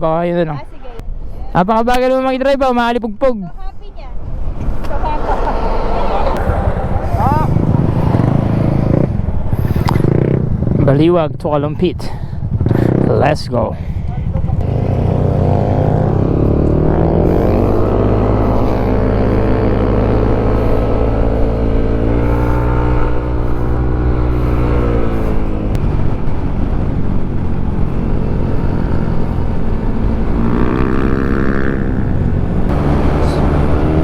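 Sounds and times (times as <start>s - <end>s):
motor scooter engine accelerating: 5.1s - 10.9s, 14.4s - 34.0s.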